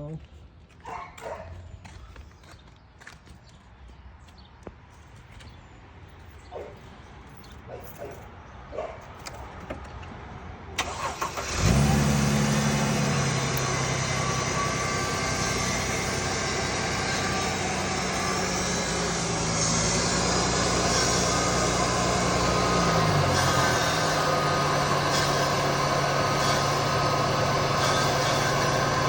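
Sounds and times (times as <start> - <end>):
car engine idling: 10.8 - 29.0.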